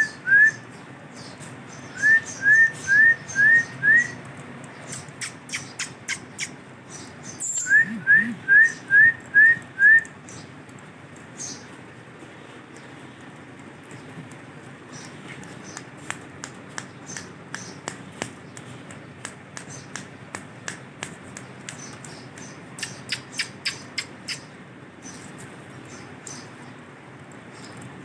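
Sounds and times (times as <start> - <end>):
parakeet clicking: 15.0 - 24.5.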